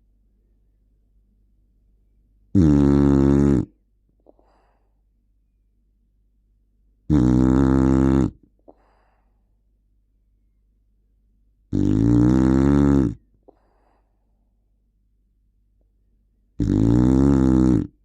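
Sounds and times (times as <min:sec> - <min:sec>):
dog snoring loudly: 0:02.6 - 0:03.7, 0:07.1 - 0:08.4, 0:11.7 - 0:13.2, 0:16.6 - 0:18.0
faint short breath: 0:04.2 - 0:05.1, 0:08.6 - 0:09.6, 0:13.4 - 0:14.6.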